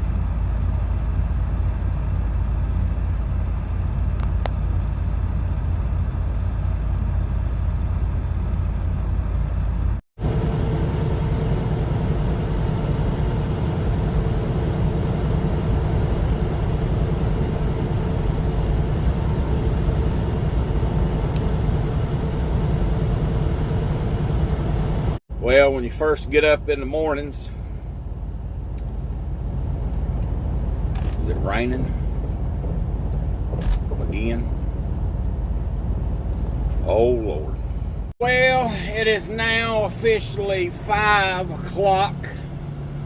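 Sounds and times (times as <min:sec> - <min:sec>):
truck engine and road rumble: 0:00.0 - 0:43.0
steady droning hum: 0:10.2 - 0:43.0.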